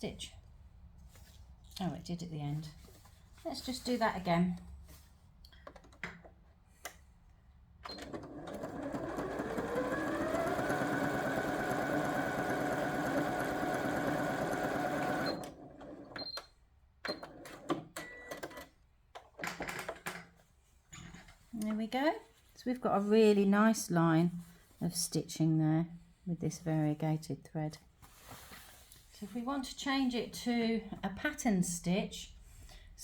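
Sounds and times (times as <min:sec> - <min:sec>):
sewing machine whirring: 0:07.8 - 0:16.2.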